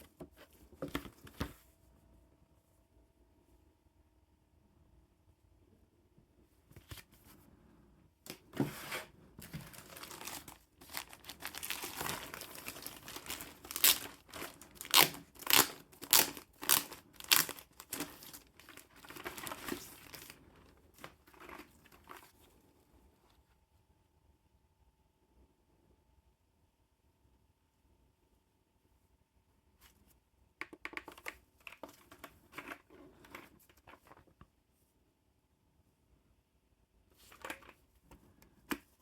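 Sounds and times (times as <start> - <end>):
packaging crinkling and rustling: 8.3 - 22.4.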